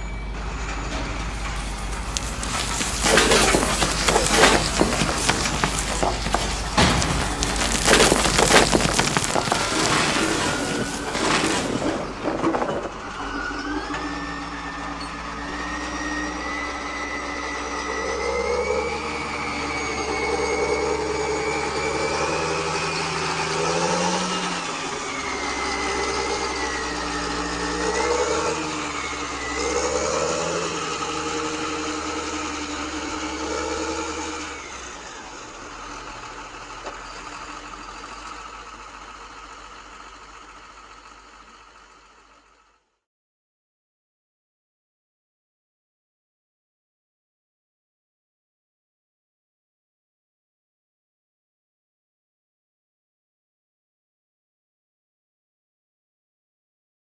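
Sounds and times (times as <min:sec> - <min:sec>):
dense crackling: 0:00.0 - 0:13.8
model motor whine: 0:13.4 - 0:41.5.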